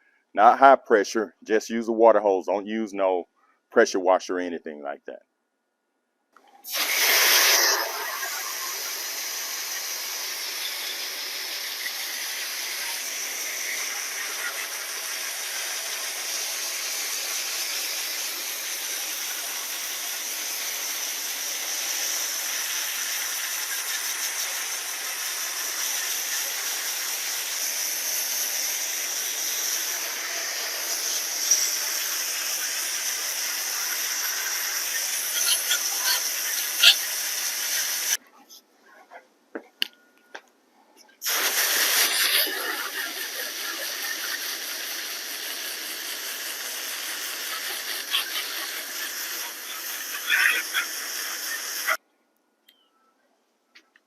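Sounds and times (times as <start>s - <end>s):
hose spraying water on metal coils: 6.6s - 38.2s, 41.2s - 52.0s.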